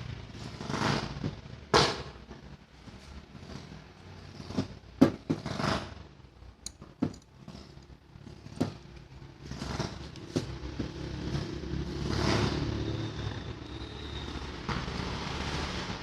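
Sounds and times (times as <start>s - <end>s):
sharp clicks and knocks: 6.6s - 11.0s.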